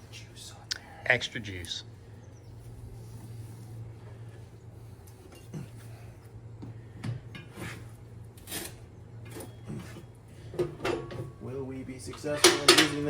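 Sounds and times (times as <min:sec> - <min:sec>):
tire irons clinking on wheel rim: 0:08.4 - 0:13.0.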